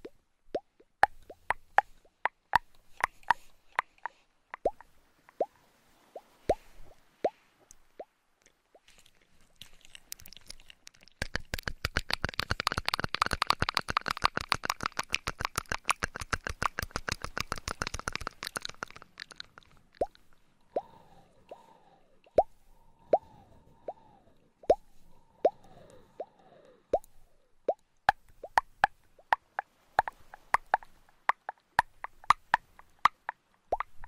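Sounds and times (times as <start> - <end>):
fast crackling clicks: 9.6 - 20.3
short pops rising in pitch: 27.7 - 34.0.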